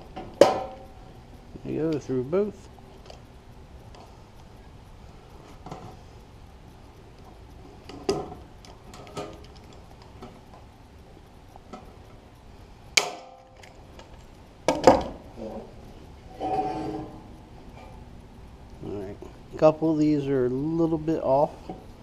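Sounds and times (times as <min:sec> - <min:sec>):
sheet metal clanking: 0:16.3 - 0:17.9.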